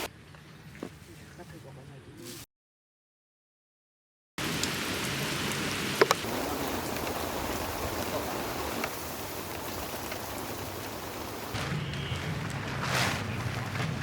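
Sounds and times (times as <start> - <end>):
heavy rain falling: 4.4 - 12.7.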